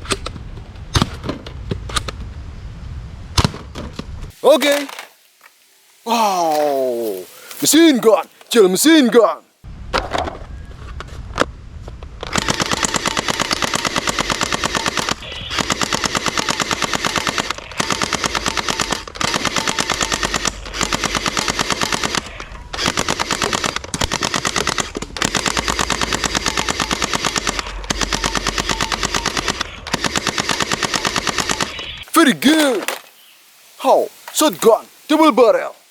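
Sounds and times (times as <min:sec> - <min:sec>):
toy machine gun rattling: 0:12.3 - 0:31.7.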